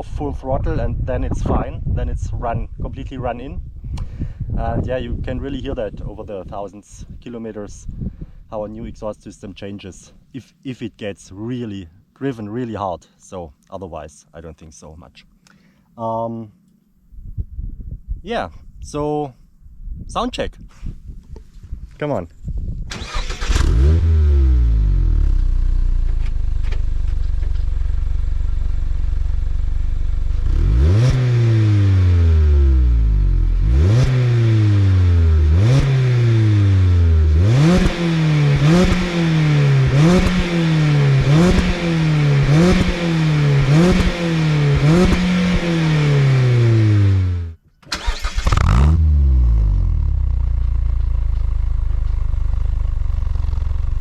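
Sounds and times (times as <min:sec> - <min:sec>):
car engine revving: 0:23.0 - 0:54.0
car engine idling: 0:24.6 - 0:30.9, 0:49.1 - 0:54.0.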